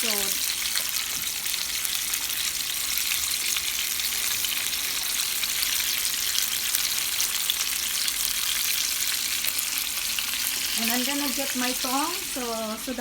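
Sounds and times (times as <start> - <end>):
chicken deep-frying in oil: 0.0 - 13.0.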